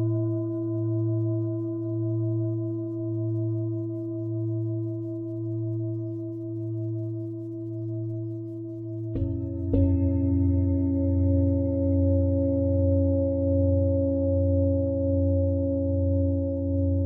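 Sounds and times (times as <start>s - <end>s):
singing bowl struck: 9.2s - 13.2s
singing bowl ringing: 9.2s - 16.1s.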